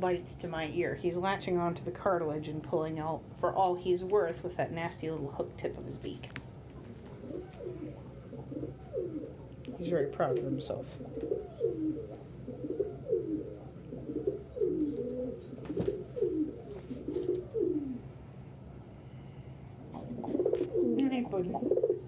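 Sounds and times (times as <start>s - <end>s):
pigeons cooing: 6.8s - 18.2s, 19.7s - 22.0s.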